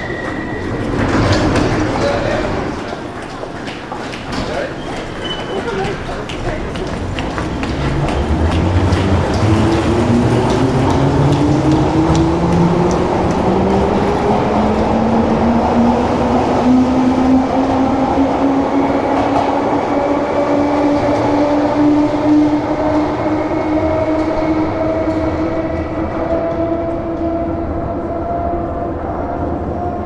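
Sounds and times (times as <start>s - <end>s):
heavy rolling rumble: 5.6s - 23.3s.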